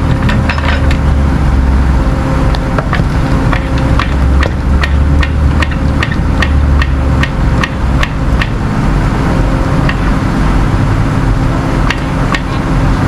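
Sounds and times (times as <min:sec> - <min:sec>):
engine low rumble: 0:00.0 - 0:13.0
sharp metallic clicks: 0:03.5 - 0:08.6.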